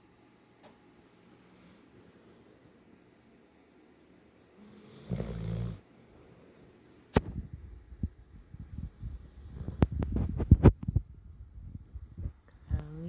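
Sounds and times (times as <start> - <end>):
dog snoring: 1.1 - 2.5, 4.4 - 6.7
low irregular rumbles: 7.2 - 13.0.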